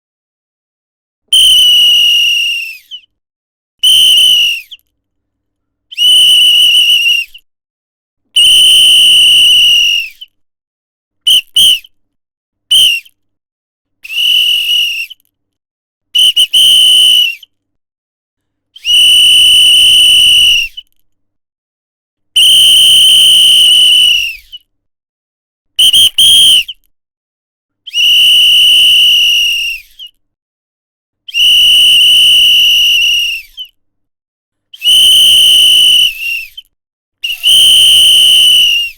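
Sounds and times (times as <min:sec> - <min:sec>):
whistle blasts: 0:01.3 - 0:03.0, 0:03.8 - 0:04.8, 0:05.9 - 0:07.4, 0:08.4 - 0:10.3, 0:11.3 - 0:11.9, 0:12.7 - 0:13.1, 0:14.0 - 0:15.2, 0:16.2 - 0:17.5, 0:18.8 - 0:20.9, 0:22.4 - 0:24.6, 0:25.8 - 0:26.8, 0:27.9 - 0:30.1, 0:31.3 - 0:33.7, 0:34.8 - 0:38.9.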